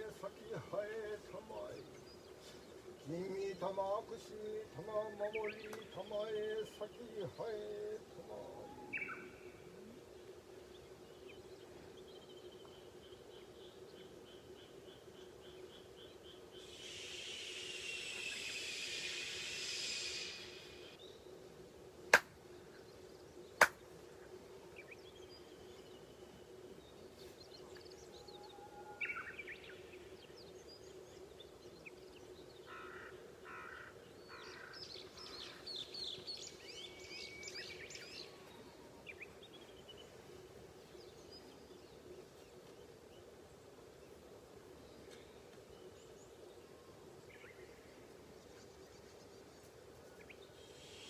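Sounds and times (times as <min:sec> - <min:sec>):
sharp handclaps: 0:22.1 - 0:22.3, 0:23.6 - 0:23.8
birds calling: 0:22.1 - 0:43.4.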